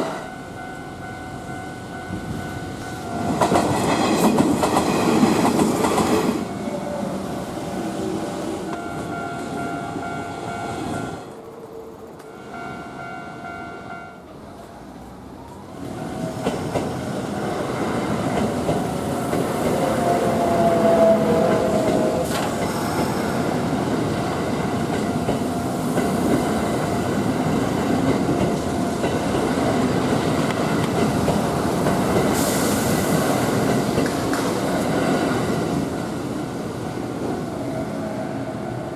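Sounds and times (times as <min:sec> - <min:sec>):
train wheels clattering over rail joints: 0:02.8 - 0:06.5, 0:21.4 - 0:35.8.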